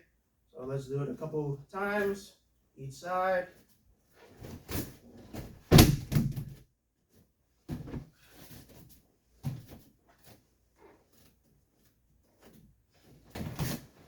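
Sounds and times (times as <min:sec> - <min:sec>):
thuds on grappling dummy: 0:05.4 - 0:06.6.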